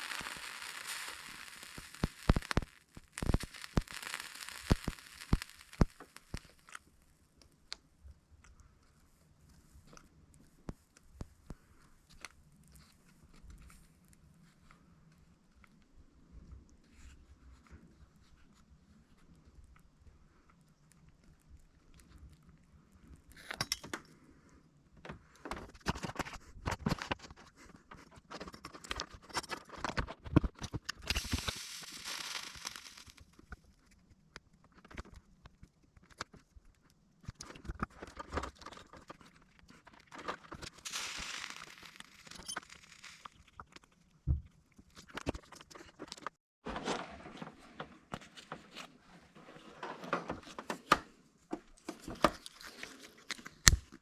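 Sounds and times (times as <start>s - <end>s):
rasping hiss: 0.0s - 6.7s, 31.1s - 33.3s, 40.7s - 43.4s
clicks and rustling of cables: 0.0s - 15.9s, 16.9s - 54.0s.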